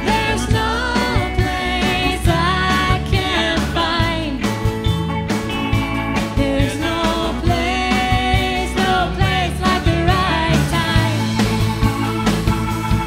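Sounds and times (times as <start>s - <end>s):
person singing: 0.0s - 4.6s, 6.2s - 11.6s
guitar and drums: 0.0s - 13.0s.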